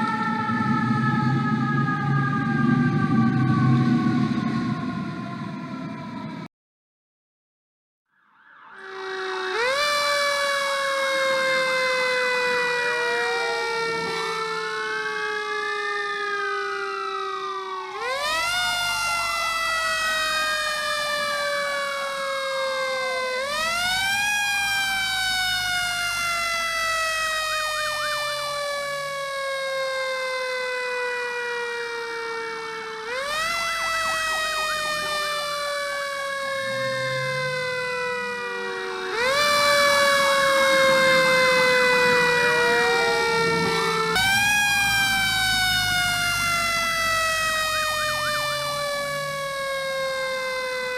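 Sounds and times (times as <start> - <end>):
siren wailing quickly: 0.0 - 6.5, 8.1 - 50.9
siren jumping up and sliding down: 8.1 - 50.9.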